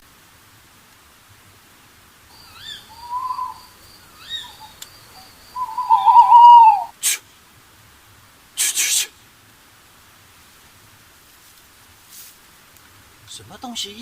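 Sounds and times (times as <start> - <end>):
night animal calling: 2.3 - 7.2.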